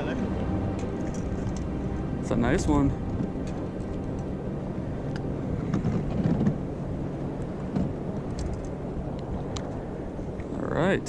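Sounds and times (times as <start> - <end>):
boat motor humming: 0.0 - 11.0.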